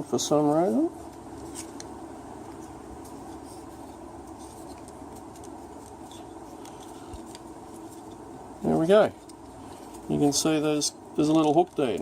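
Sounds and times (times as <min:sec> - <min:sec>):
steady background noise: 0:00.0 - 0:12.0.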